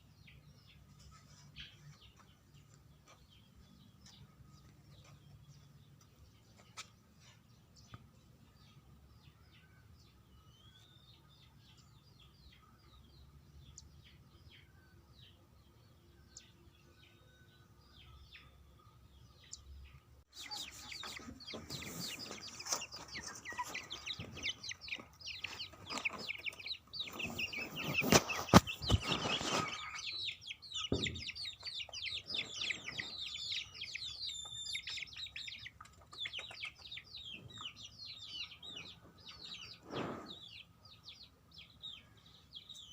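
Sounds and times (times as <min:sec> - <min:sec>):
chicks peeping: 0:00.0 - 0:42.9
rustling noise: 0:20.5 - 0:30.3, 0:38.8 - 0:40.4.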